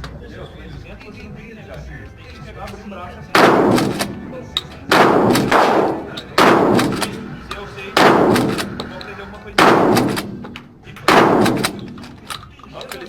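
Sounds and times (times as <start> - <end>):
shotgun blasts echoing: 3.4 - 7.4, 8.0 - 8.9, 9.6 - 12.3.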